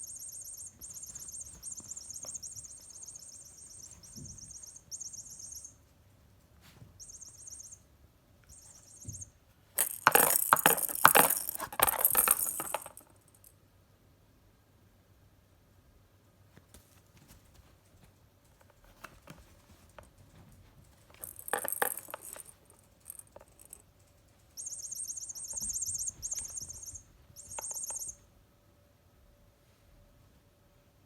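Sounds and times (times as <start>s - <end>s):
high-pitched jingling: 0.0s - 5.8s, 7.0s - 7.8s, 8.5s - 13.0s, 21.2s - 23.8s, 24.6s - 28.2s
cat toy rattling: 8.5s - 13.4s, 21.1s - 28.2s.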